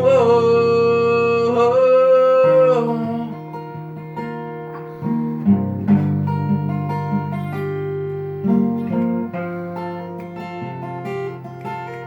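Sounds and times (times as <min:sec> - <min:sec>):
person singing: 0:00.0 - 0:03.8
acoustic guitar chords: 0:00.0 - 0:12.0.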